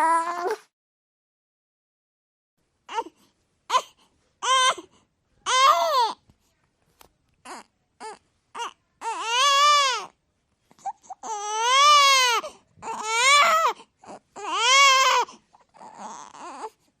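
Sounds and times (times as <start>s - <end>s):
baby crying: 0.0s - 0.6s, 2.9s - 6.2s, 7.4s - 10.2s, 10.8s - 16.8s.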